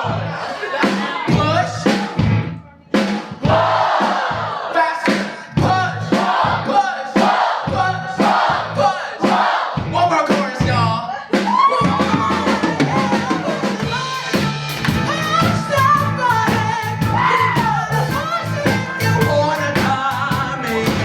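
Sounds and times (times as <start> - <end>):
live band playing: 0.0 - 4.3, 7.2 - 21.0
drum beat: 0.0 - 21.0
singer and crowd chanting: 3.2 - 10.9.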